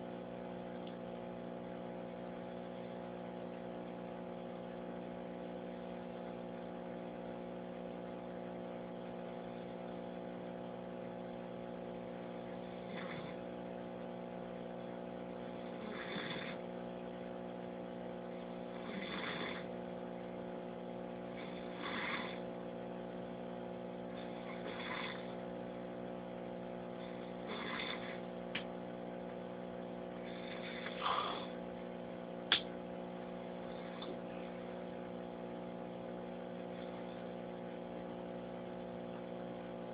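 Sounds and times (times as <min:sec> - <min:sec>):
steady electrical hum: 0:00.0 - 0:39.9
person snoring: 0:12.5 - 0:13.5, 0:15.5 - 0:16.6, 0:18.6 - 0:19.7, 0:21.3 - 0:22.4, 0:24.1 - 0:25.4, 0:27.0 - 0:28.3, 0:30.2 - 0:31.6.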